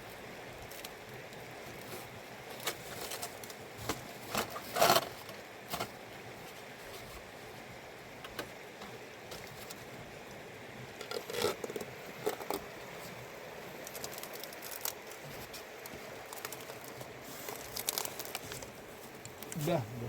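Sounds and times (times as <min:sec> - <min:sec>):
steady hiss: 0:00.0 - 0:20.0
rustling: 0:01.6 - 0:07.5, 0:13.8 - 0:20.0.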